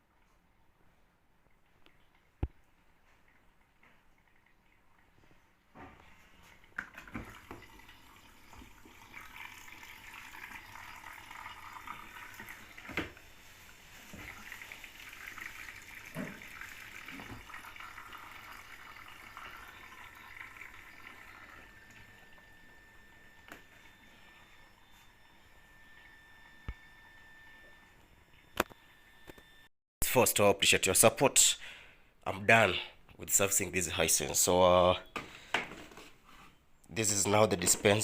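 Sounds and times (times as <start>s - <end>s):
water running and splashing: 6.1s - 21.8s.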